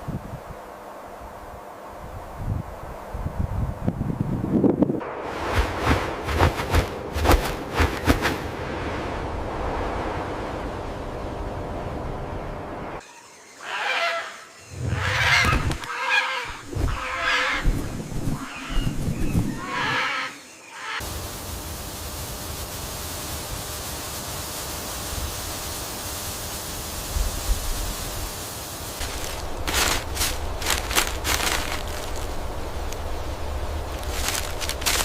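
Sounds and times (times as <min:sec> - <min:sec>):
screeching bird calls: 0:13.0 - 0:21.0
steady hiss: 0:20.5 - 0:35.0.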